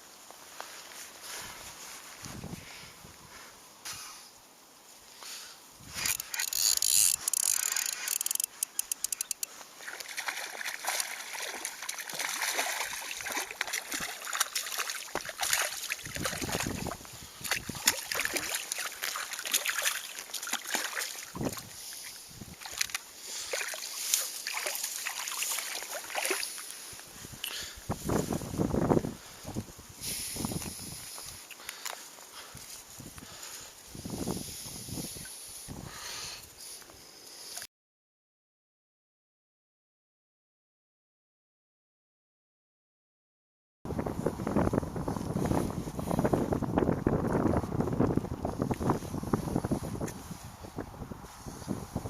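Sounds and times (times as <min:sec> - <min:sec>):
quick clicks: 0:06.0 - 0:09.5
water splashing beside boat: 0:06.0 - 0:27.0.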